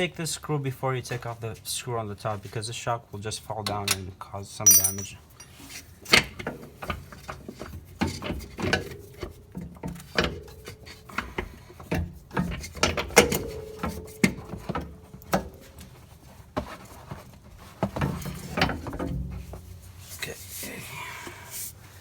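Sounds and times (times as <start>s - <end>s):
hand tools clicking on metal bolt: 4.7s - 5.6s.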